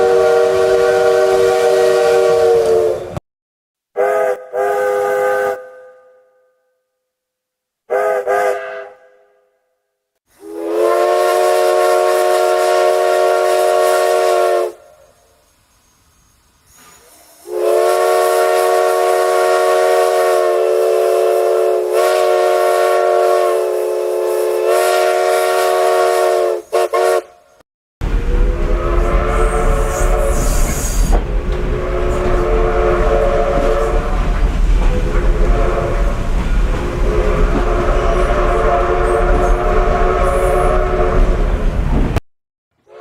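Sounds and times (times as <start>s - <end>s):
multi-note train whistle: 0.0s - 3.2s, 4.0s - 6.7s, 7.9s - 15.4s, 17.4s - 41.6s, 42.8s - 43.0s
moving train rumble: 10.4s - 42.2s.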